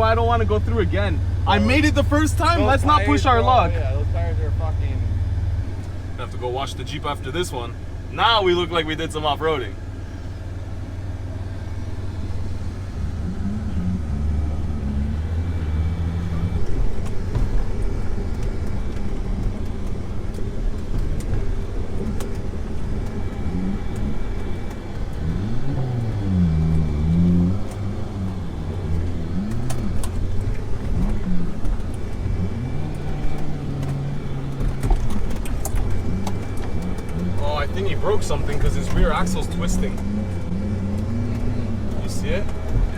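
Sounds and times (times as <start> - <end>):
vehicle engine revving: 0.0 - 42.9.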